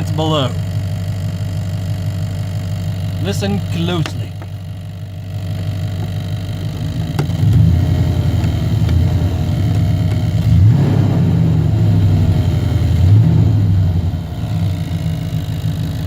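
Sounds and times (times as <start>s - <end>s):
engine running revving: 5.5s - 16.0s.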